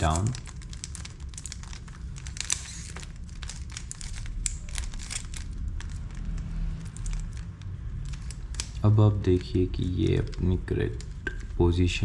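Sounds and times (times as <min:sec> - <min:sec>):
puzzle cube clicking and rattling: 0:00.0 - 0:08.8.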